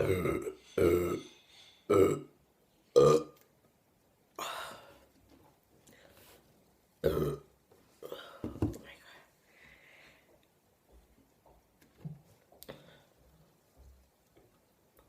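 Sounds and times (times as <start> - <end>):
woman burping loudly: 0.0 - 1.2, 1.9 - 3.4, 7.0 - 8.2.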